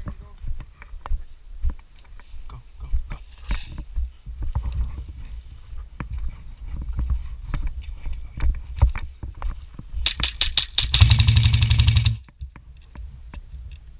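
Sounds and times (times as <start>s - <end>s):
airsoft gun shots: 10.1s - 12.2s
handling clicks and knocks: 10.1s - 13.0s.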